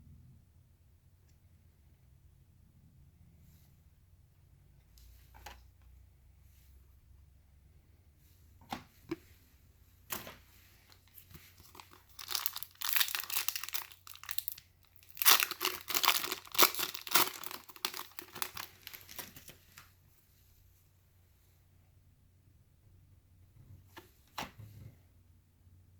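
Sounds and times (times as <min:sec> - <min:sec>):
card pack wrapper tearing and crinkling: 0:11.0 - 0:19.6.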